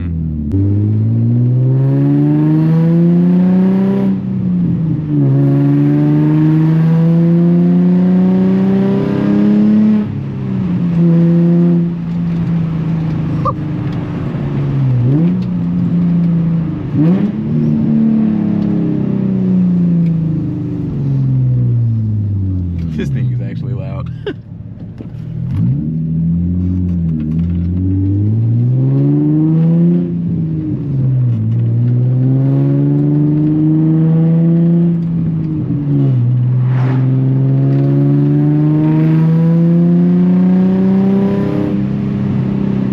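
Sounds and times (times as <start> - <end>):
car engine accelerating loudly: 0.0 - 24.4, 25.0 - 42.9.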